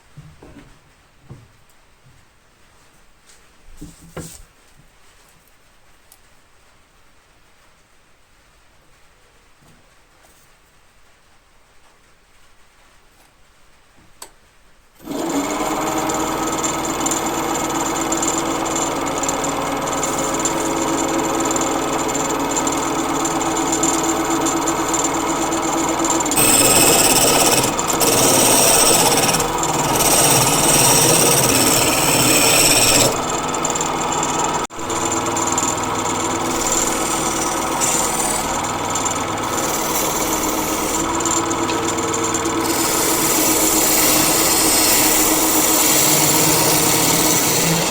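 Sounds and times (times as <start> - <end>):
turning tool cutting wood: 15.0 - 47.9
wood lathe motor hum: 15.0 - 47.9.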